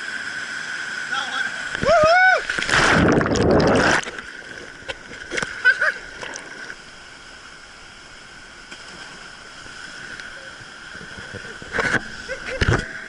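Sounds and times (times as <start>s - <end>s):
flowing water rushing: 0.0s - 13.0s
splashes and knocks: 1.8s - 6.7s.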